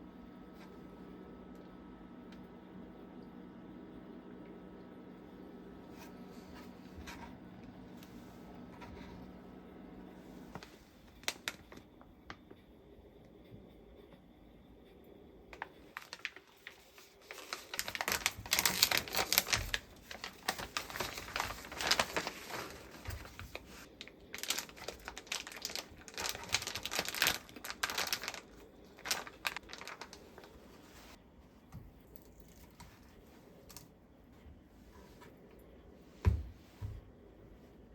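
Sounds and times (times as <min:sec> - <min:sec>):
plastic packaging crinkling: 0:10.6 - 0:11.9, 0:15.6 - 0:31.2.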